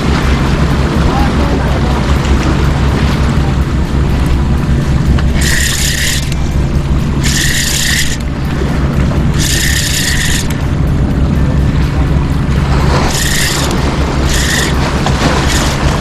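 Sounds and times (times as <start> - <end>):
steady low rumble: 0.0 - 16.0
fishing reel cranking: 4.1 - 10.9, 12.8 - 16.0.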